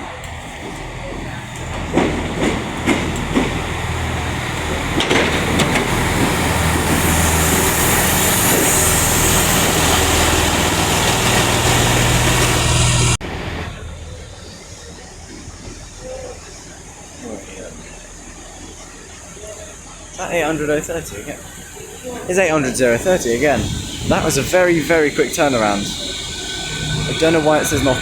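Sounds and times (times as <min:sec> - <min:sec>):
train diesel engine running: 0:00.0 - 0:28.0
hiss: 0:20.6 - 0:28.0.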